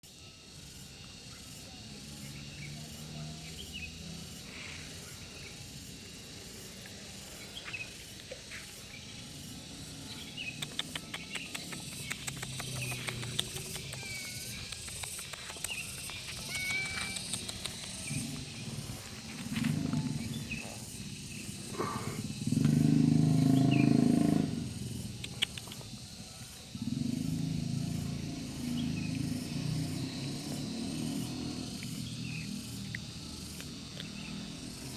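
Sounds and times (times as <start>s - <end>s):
cat making low rumbling sounds: 16.4s - 20.6s.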